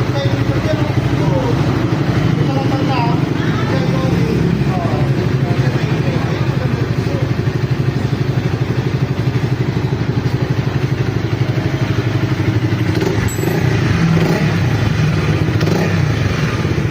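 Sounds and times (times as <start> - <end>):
motorcycle engine idling: 0.0 - 16.9.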